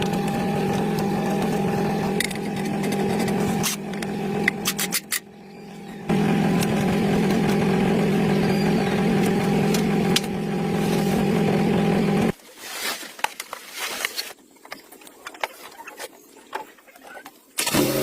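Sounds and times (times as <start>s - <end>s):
jeep engine idling: 5.4s - 12.3s.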